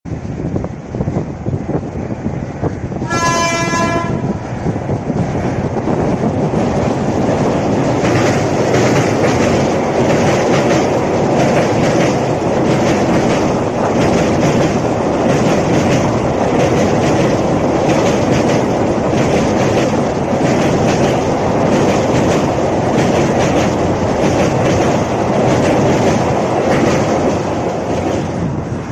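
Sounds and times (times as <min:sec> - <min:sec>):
train rumbling over bridge: 0:00.0 - 0:28.9
wheels clattering on rails: 0:00.1 - 0:28.9
train horn: 0:03.0 - 0:04.4.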